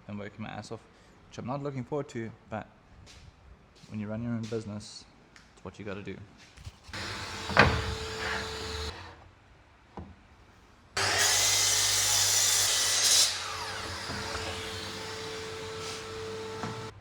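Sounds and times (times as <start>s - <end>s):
power saw cutting wood: 6.9s - 9.2s, 11.0s - 17.0s.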